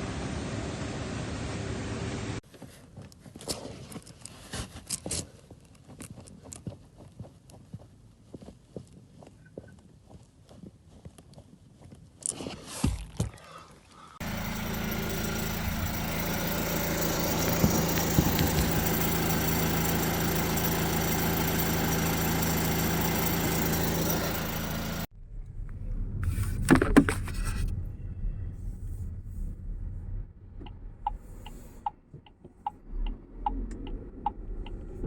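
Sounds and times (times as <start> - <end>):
knocks and clatter: 14.2 - 24.4
car engine idling: 14.2 - 26.7.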